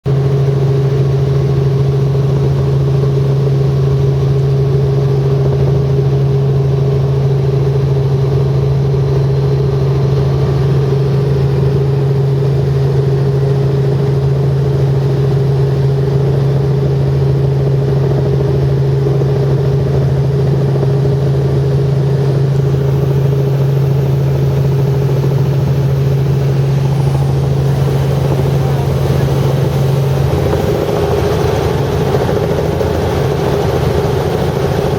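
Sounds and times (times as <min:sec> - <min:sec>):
helicopter engine and rotor drone: 0:00.1 - 0:34.9.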